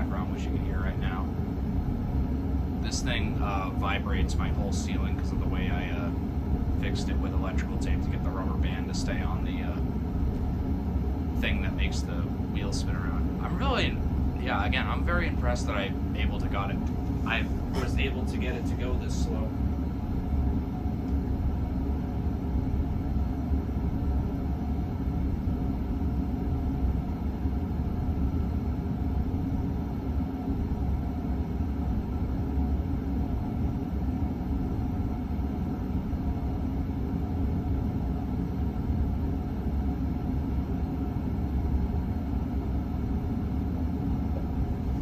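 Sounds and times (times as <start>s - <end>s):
ceiling fan low rumble: 0.0s - 45.0s
furnace running: 0.0s - 45.0s.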